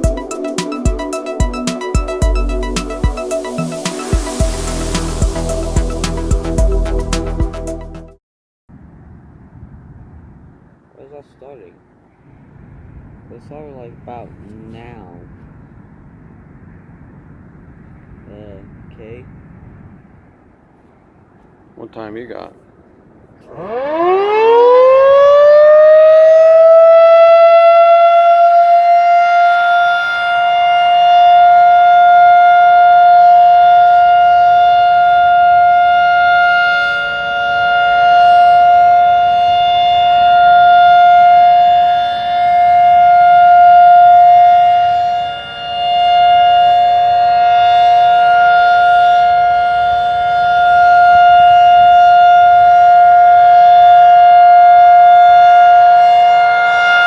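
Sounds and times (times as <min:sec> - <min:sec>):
warning siren wailing: 0:00.0 - 0:07.9, 0:23.4 - 0:57.0.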